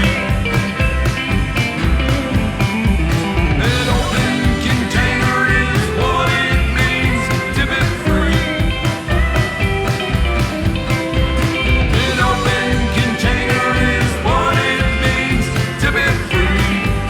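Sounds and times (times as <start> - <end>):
country-rock band playing live: 0.0 - 17.0.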